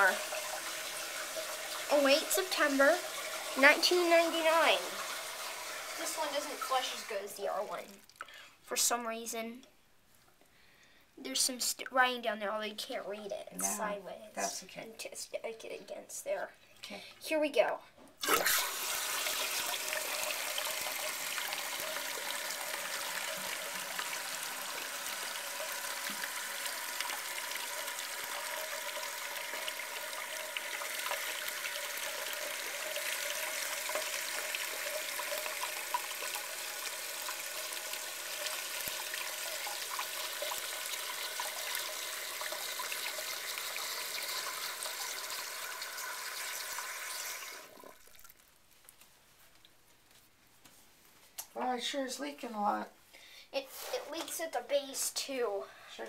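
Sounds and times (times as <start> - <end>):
toilet flushing and refilling: 0.0 - 7.9, 18.2 - 48.4.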